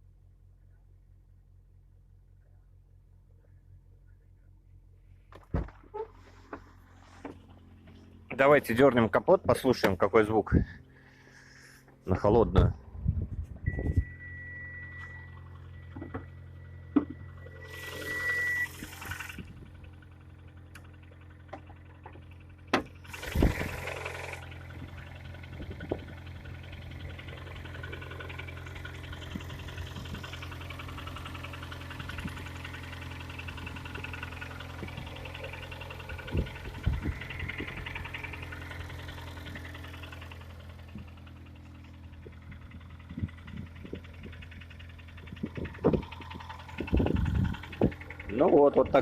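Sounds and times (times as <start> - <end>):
car engine idling with knock: 5.2 - 49.0
loud engine clunks: 11.8 - 49.0.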